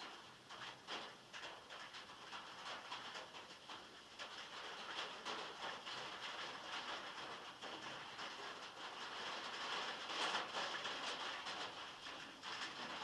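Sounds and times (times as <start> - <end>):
heavy rain on a metal roof: 0.0 - 13.0.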